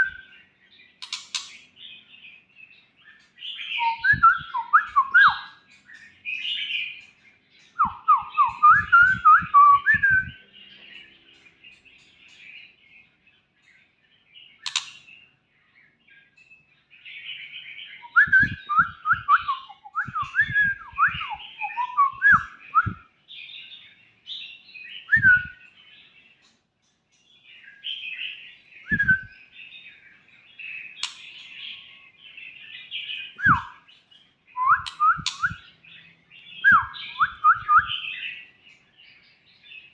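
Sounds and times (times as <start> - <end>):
sharp clicks: 1.0 - 1.6, 14.7 - 15.0, 34.9 - 35.6
bird whistled calls: 3.5 - 5.6, 7.8 - 10.4, 14.6 - 15.1, 17.8 - 23.1, 24.8 - 25.7, 27.9 - 29.5, 32.9 - 33.9, 34.5 - 35.8, 36.5 - 38.5.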